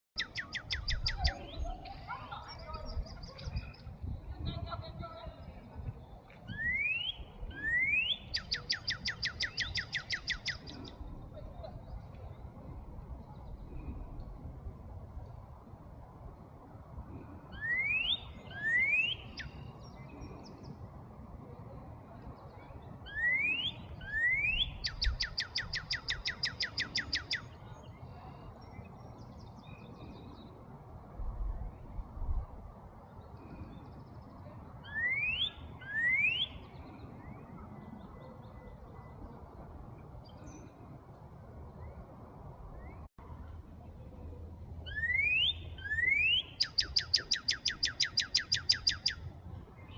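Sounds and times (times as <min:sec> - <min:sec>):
bird whistling rising notes: 0:06.5 - 0:10.8, 0:17.5 - 0:19.7, 0:23.0 - 0:27.5, 0:34.8 - 0:36.6, 0:44.8 - 0:49.2
other birds chirping: 0:06.5 - 0:12.3, 0:22.3 - 0:30.5, 0:44.8 - 0:49.9
bird rapid trill: 0:23.1 - 0:27.5, 0:44.9 - 0:49.2.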